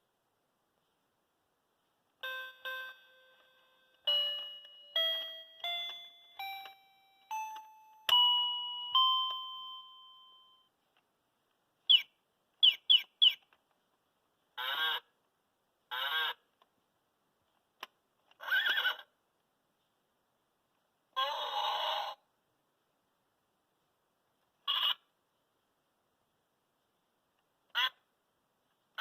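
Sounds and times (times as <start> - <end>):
toy keyboard chime tune: 2.2 - 10.7
recorded bird chirps: 11.8 - 15.2.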